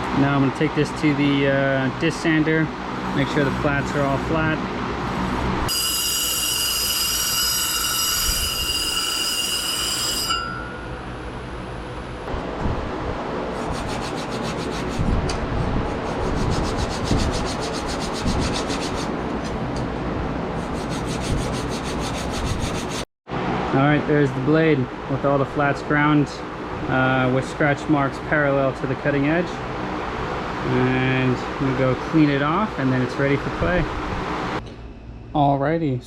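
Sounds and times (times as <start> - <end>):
disc sander whine: 5.0 - 12.3
steel scraping against abrasive: 5.1 - 10.9.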